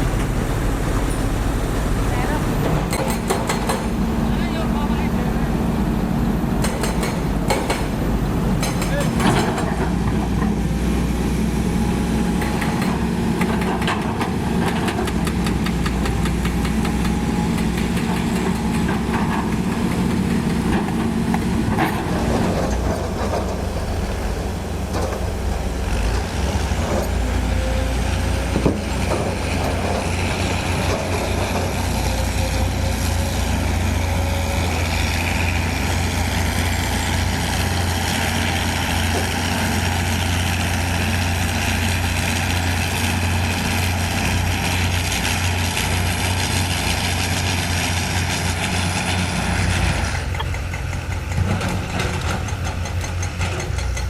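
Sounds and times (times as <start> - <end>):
machine knocks and clanks: 0.0 - 4.0, 6.6 - 8.0, 8.6 - 10.6
diesel engine of heavy machinery: 0.0 - 54.0.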